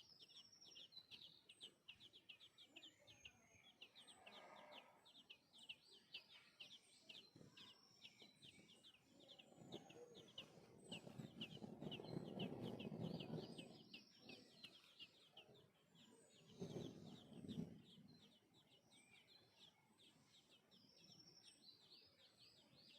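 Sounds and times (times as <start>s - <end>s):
baby birds begging chirps: 0.0s - 22.9s
rustling noise: 10.4s - 13.9s.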